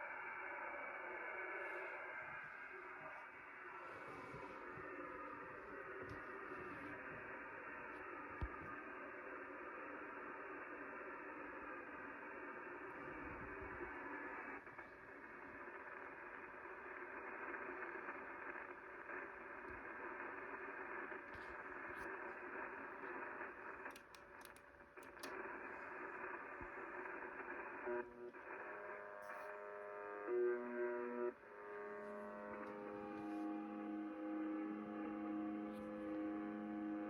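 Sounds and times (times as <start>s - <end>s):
shortwave radio static: 0.0s - 37.0s
sharp clicks: 23.5s - 25.6s.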